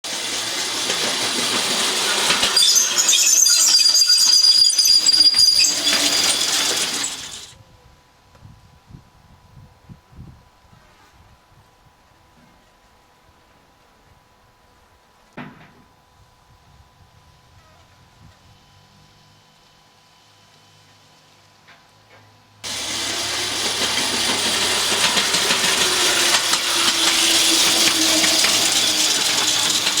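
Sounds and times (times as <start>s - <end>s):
steel wheels rolling on rail: 0.0s - 7.6s, 22.6s - 30.0s
high-pitched wheel squeal: 0.1s - 7.5s, 22.7s - 30.0s.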